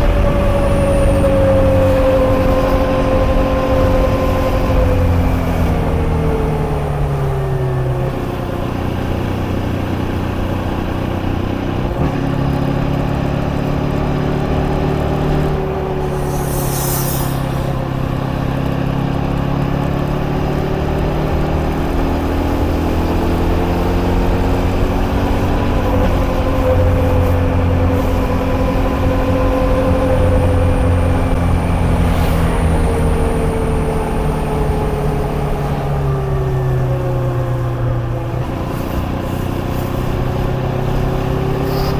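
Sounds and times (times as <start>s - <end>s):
motorcycle engine running: 0.0s - 16.8s, 17.4s - 41.9s
wind and road noise: 0.0s - 41.9s
brief hiss: 16.0s - 17.9s, 41.6s - 41.9s.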